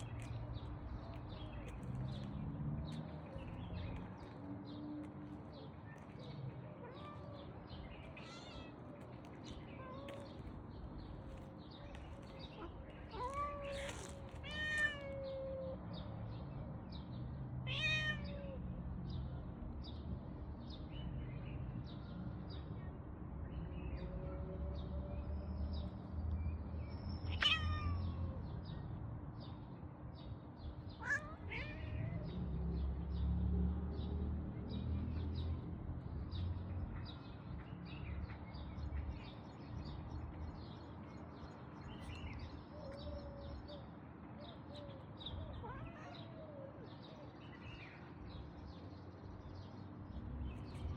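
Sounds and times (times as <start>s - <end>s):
cat meowing: 12.6s - 15.8s, 17.7s - 18.6s, 27.3s - 28.3s, 31.0s - 32.4s, 45.5s - 46.6s.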